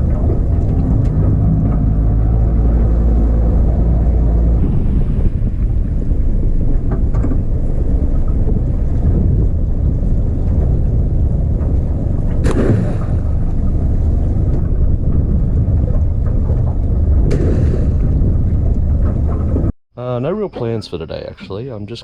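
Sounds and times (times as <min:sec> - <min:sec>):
water splashes on hull: 0:00.0 - 0:19.7
wind buffeting microphone: 0:00.0 - 0:19.7
boat motor and hull rumble: 0:00.0 - 0:22.0.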